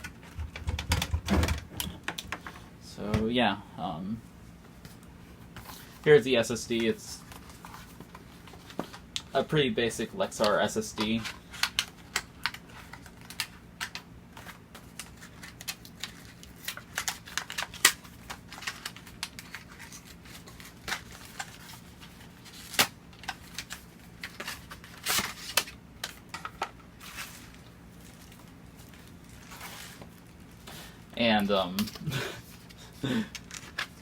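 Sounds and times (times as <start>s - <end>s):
packaging clicks and crinkling: 10.4s - 34.0s.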